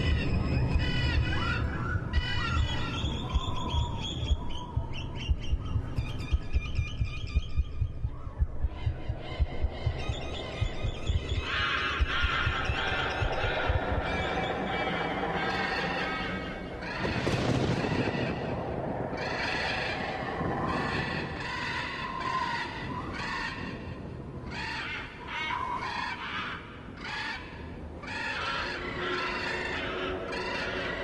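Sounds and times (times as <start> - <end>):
steady low rumble: 0.0 - 24.5
harsh animal calls: 0.0 - 31.0.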